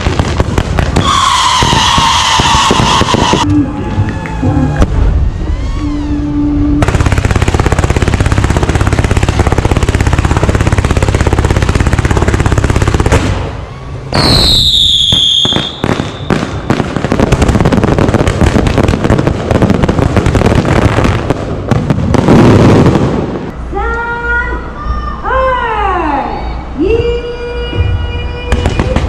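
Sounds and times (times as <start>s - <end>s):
firework bangs: 0.0s - 3.5s, 6.8s - 23.6s, 28.5s - 29.0s
firecrackers crackling: 0.0s - 5.7s, 6.8s - 23.6s, 28.5s - 29.0s
falling firework whistle: 0.9s - 7.3s, 13.3s - 17.0s.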